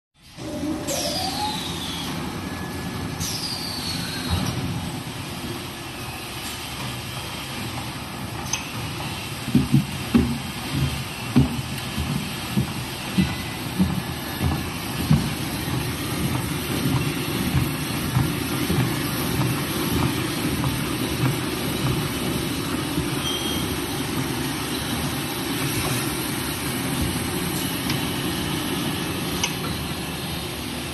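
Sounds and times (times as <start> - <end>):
machine knocking: 7.8 - 29.8.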